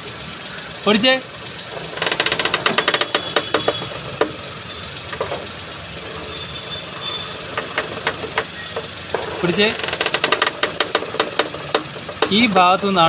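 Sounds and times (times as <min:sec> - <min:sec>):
car engine idling: 0:00.0 - 0:13.0
strut mount creaking clicks: 0:01.8 - 0:04.4, 0:07.5 - 0:08.9, 0:09.7 - 0:12.4.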